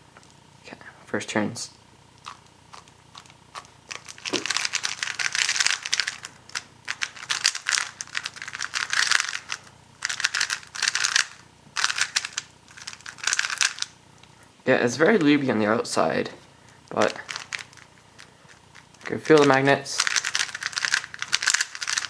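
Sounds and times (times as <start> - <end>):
puzzle cube clicking turns: 2.2 - 13.9, 16.9 - 22.0.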